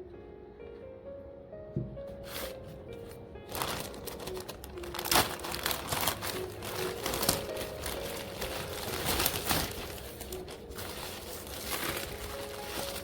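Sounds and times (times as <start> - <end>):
packaging crinkling and rustling: 2.2 - 13.0.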